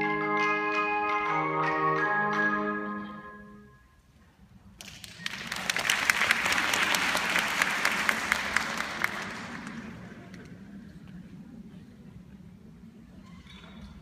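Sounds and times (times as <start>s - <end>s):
tone chime notes: 0.0s - 3.8s
audience applause: 5.0s - 10.3s.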